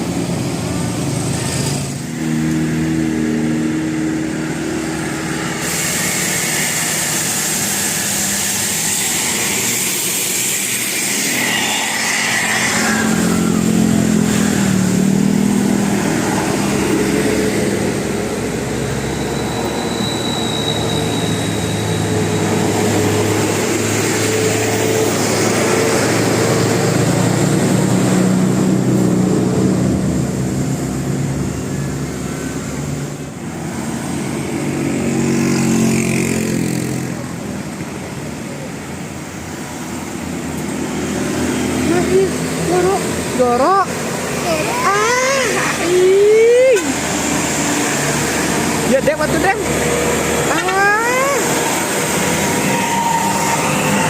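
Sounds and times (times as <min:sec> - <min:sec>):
road traffic passing: 0:00.0 - 0:54.0.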